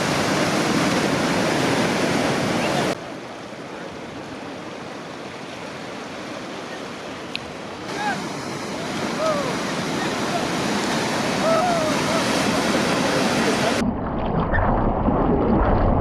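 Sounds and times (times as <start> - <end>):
ocean surf rushing: 0.0 - 13.8.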